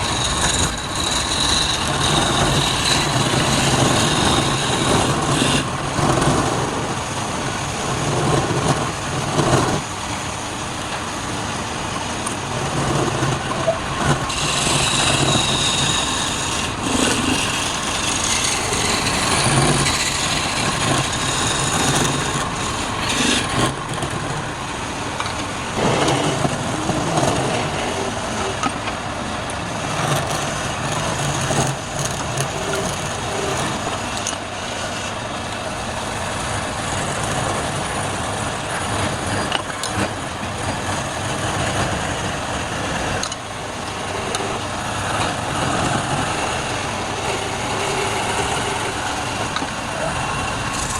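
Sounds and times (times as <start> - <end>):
turning tool scraping wood: 0.0 - 7.0, 12.2 - 24.6, 25.2 - 28.8, 29.8 - 35.2, 38.9 - 50.9
wood lathe running: 0.0 - 9.8, 11.0 - 28.7, 29.8 - 50.9.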